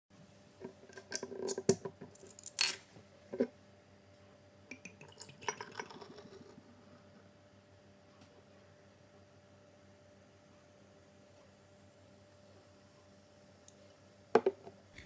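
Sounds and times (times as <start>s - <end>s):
knock: 14.4s - 14.7s.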